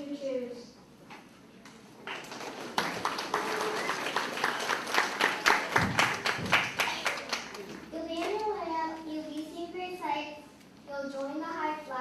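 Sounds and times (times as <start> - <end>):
audience applause: 2.0 - 7.8.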